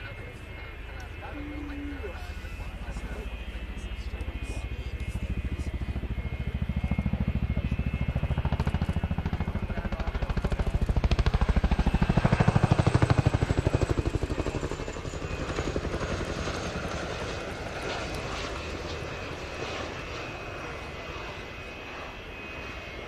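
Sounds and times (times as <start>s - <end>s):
helicopter engines running: 0.0s - 23.0s
helicopter rotors beating: 0.0s - 23.0s.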